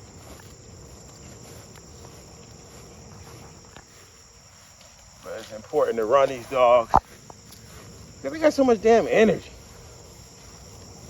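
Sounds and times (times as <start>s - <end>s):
faint ticks: 0.0s - 7.9s
high-pitched insect chorus: 0.0s - 11.0s.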